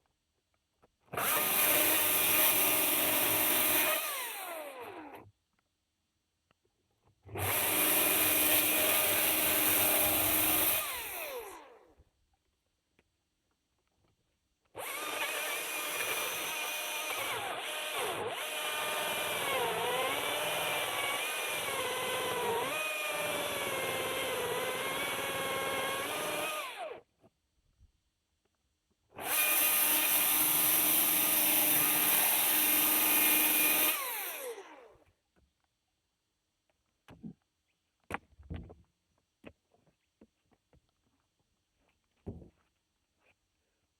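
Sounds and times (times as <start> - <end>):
electric chainsaw cutting wood: 1.2 - 5.3, 7.3 - 11.8, 14.8 - 27.0, 29.2 - 35.0.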